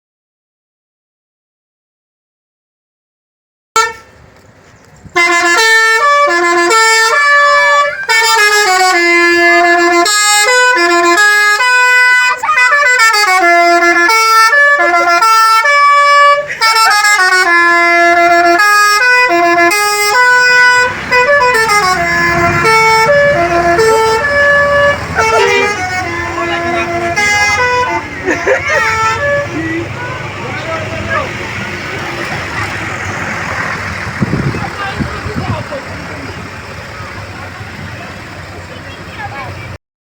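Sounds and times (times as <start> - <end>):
multi-tone bus air horn melody: 3.8 - 4.2, 5.1 - 39.7.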